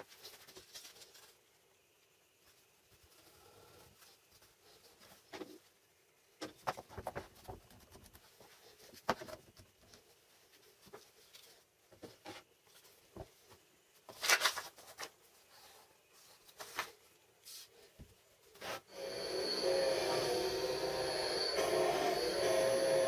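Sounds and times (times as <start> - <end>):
rustling scrape: 18.5 - 20.0.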